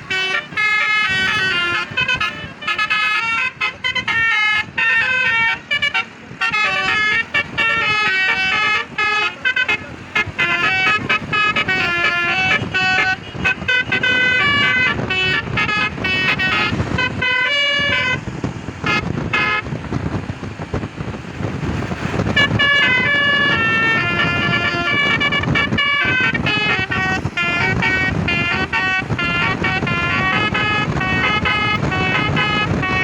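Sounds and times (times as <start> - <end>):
musical air horn tune: 0.0 - 19.8, 21.8 - 33.0
vehicle noise: 0.0 - 33.0.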